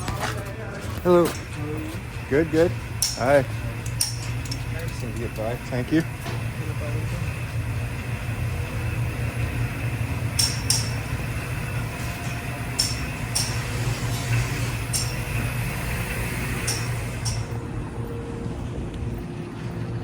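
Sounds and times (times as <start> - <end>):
steady low hum: 0.0 - 20.0
light metallic clinks: 1.3 - 6.5, 10.4 - 11.2, 12.1 - 15.7, 16.6 - 17.6.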